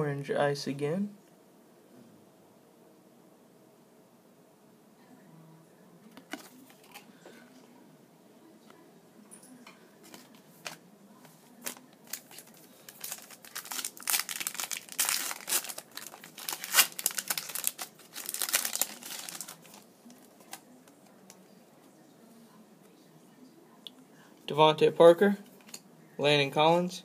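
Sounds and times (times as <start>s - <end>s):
plastic wrapper crinkling: 11.6s - 21.2s.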